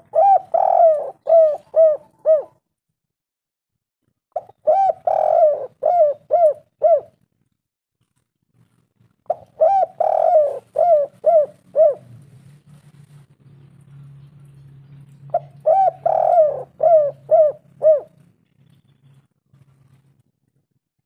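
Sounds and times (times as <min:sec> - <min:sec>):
dove cooing: 0:00.0 - 0:02.6, 0:04.4 - 0:07.2, 0:09.3 - 0:12.2, 0:15.3 - 0:18.2.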